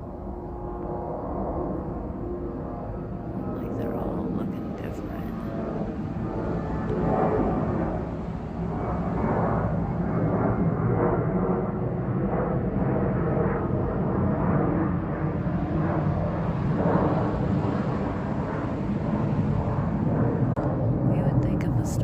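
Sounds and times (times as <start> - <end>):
airplane engine drone: 0.0 - 22.0.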